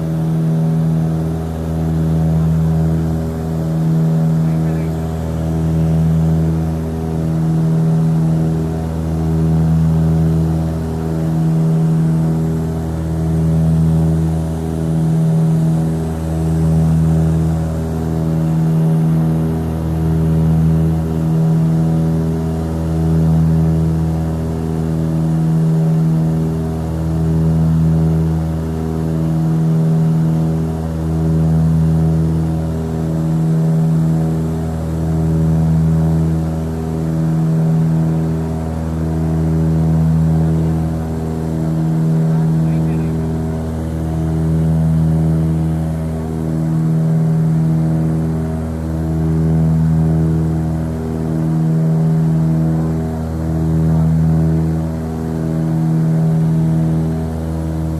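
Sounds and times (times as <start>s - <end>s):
aircraft engines droning: 0.0s - 57.9s.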